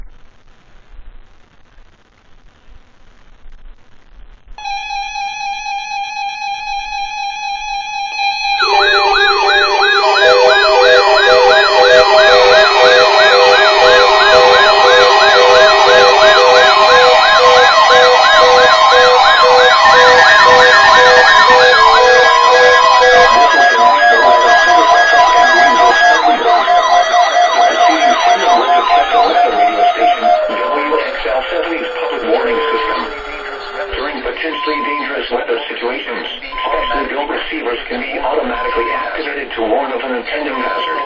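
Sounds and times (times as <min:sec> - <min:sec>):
fast warbling siren: 0:04.6 - 0:35.2, 0:38.6 - 0:39.2, 0:40.6 - 0:41.0
on-off beeping tones: 0:04.6 - 0:35.2, 0:36.5 - 0:37.4, 0:38.5 - 0:39.4, 0:40.5 - 0:41.0
steady electronic alarm tone: 0:04.6 - 0:35.2, 0:36.5 - 0:37.4, 0:38.5 - 0:39.3, 0:40.5 - 0:41.0.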